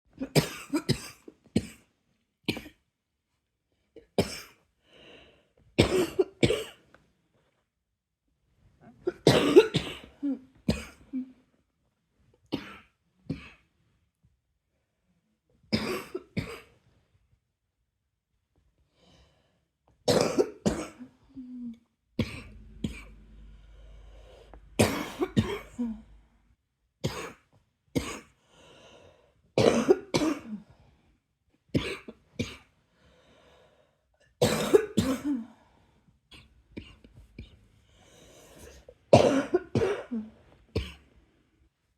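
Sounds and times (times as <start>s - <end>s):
person coughing: 0.2s - 1.8s, 5.8s - 6.8s, 9.1s - 11.3s, 15.8s - 16.7s, 22.2s - 26.2s, 29.6s - 30.6s, 34.4s - 35.5s, 39.1s - 41.0s.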